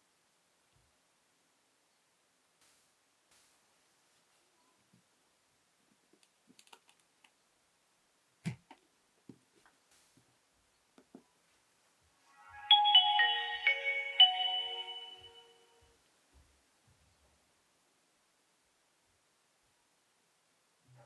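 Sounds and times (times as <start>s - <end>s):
polyphonic phone ringtone: 12.6s - 15.8s.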